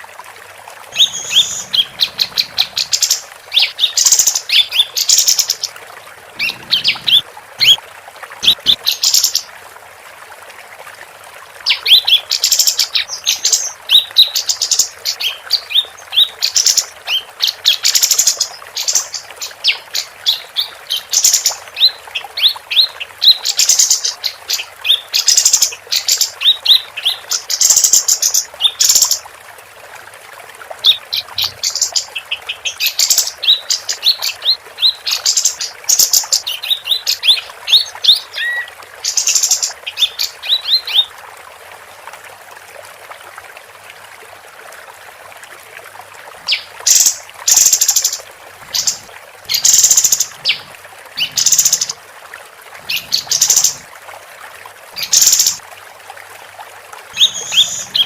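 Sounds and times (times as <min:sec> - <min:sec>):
bird singing chirping song: 0:01.0 - 0:05.6, 0:06.4 - 0:07.8, 0:57.2 - 0:58.0.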